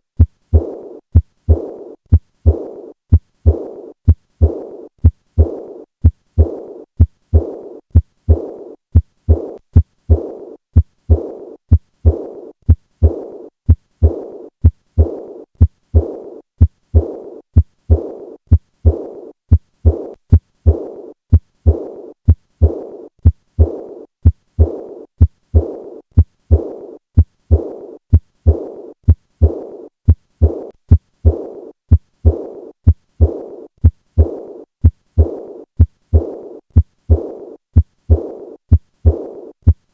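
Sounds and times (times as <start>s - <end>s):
heartbeat through stethoscope: 0.1s - 39.9s
blowing heart murmur: 19.8s - 25.0s, 25.6s - 29.8s, 30.4s - 33.6s, 34.2s - 39.8s.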